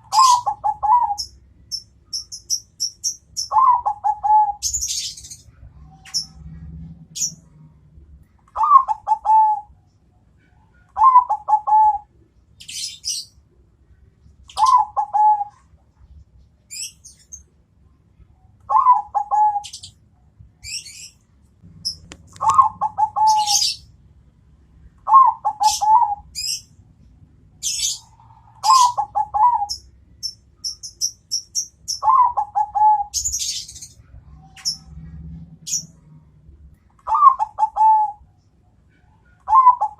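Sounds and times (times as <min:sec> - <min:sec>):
dove cooing: 0:00.0 - 0:01.3, 0:03.5 - 0:05.2, 0:08.6 - 0:09.8, 0:10.8 - 0:12.2, 0:14.5 - 0:15.7, 0:18.7 - 0:19.9, 0:21.8 - 0:23.8, 0:25.0 - 0:26.6, 0:27.6 - 0:29.8, 0:32.0 - 0:33.7, 0:37.0 - 0:38.2, 0:39.4 - 0:39.9
small birds chirping: 0:00.0 - 0:24.0, 0:24.9 - 0:36.1, 0:36.7 - 0:39.9.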